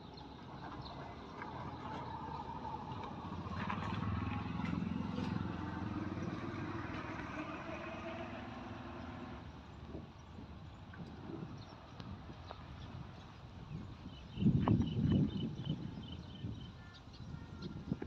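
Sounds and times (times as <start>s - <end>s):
vehicle engine running: 0.7s - 9.4s.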